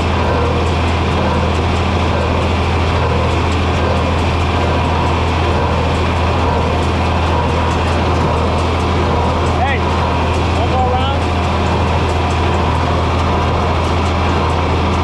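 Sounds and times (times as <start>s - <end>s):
tractor engine running: 0.0s - 15.0s.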